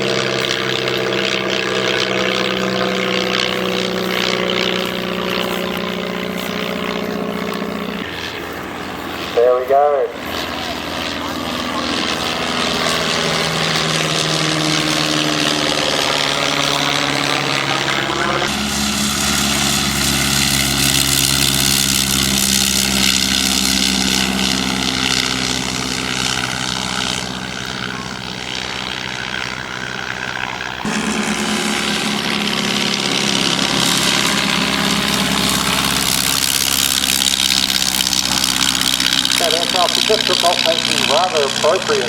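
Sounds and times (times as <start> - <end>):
biplane engine and propeller drone: 0.0 - 42.0.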